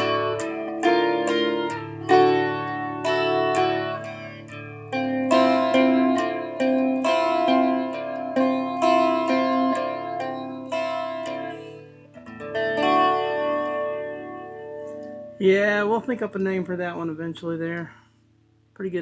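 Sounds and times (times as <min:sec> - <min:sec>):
guitar picking slow melody: 0:00.0 - 0:16.9.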